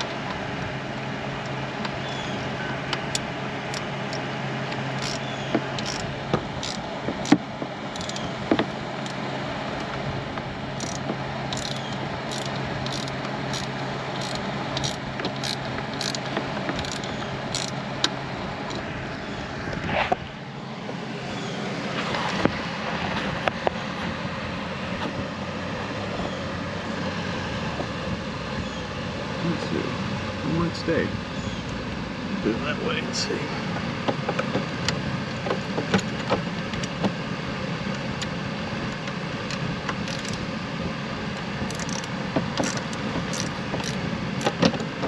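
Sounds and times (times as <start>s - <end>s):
steady background hum: 0.0s - 45.0s
hand ratchet clicking: 5.0s - 5.2s, 5.8s - 8.3s, 10.8s - 17.8s, 40.0s - 40.4s, 41.7s - 44.6s
brief scrape: 19.8s - 20.2s.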